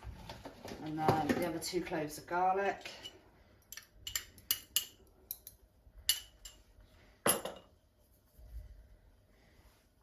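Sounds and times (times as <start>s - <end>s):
utensils clinking against a dish: 2.9s - 6.6s.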